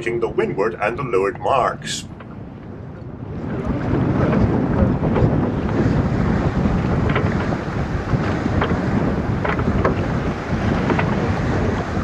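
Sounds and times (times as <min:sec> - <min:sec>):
water noise: 0:00.0 - 0:12.0
wind buffeting microphone: 0:00.0 - 0:12.0.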